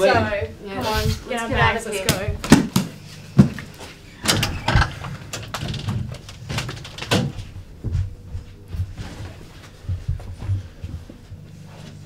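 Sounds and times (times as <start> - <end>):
knocks and thumps: 1.0 - 9.3.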